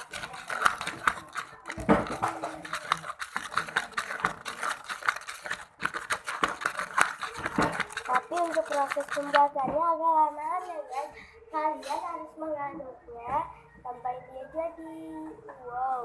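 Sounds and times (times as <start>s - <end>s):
spoon stirring and scraping sand: 0.0s - 9.6s.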